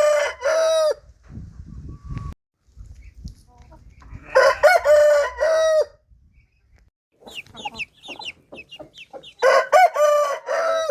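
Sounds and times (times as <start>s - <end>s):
rooster crowing: 0.0s - 1.0s, 4.3s - 6.0s, 9.4s - 10.9s.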